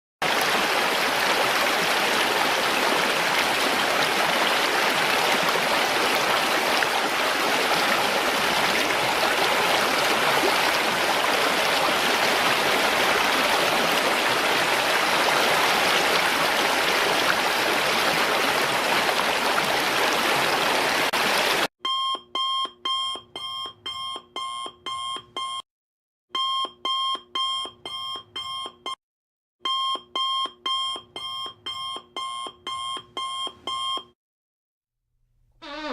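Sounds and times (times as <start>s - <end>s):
waterfall: 0.2s - 21.7s.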